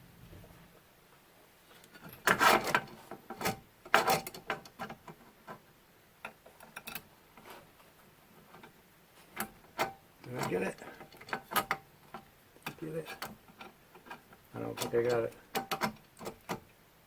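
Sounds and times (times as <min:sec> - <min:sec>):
metal tool scraping on screws: 0:01.8 - 0:05.0.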